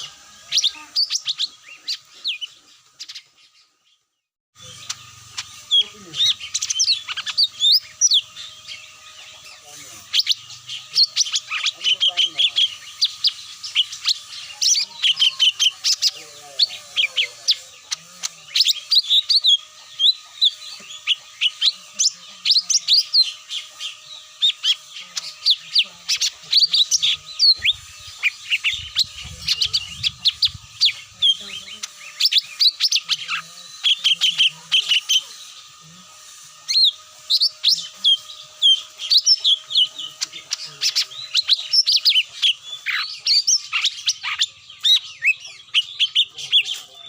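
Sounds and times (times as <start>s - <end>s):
birds chirping and whistling: 0.0s - 47.0s.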